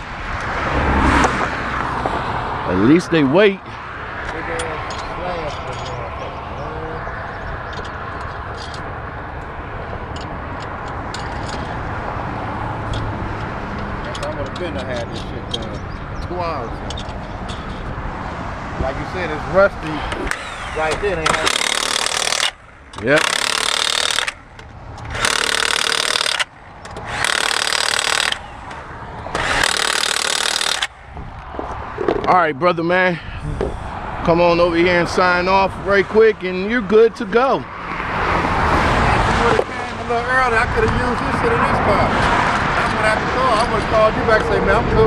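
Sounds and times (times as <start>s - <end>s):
highway traffic passing: 0.0s - 45.0s
light clicks and clinks: 4.6s - 6.1s
impact wrench hammering: 20.1s - 31.0s.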